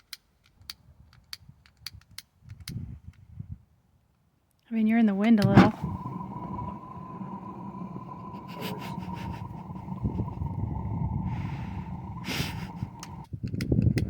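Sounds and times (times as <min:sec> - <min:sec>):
gas burner rumble: 0:05.4 - 0:13.3
thin steady whistle: 0:05.6 - 0:13.2
rush of hiss: 0:05.6 - 0:13.3.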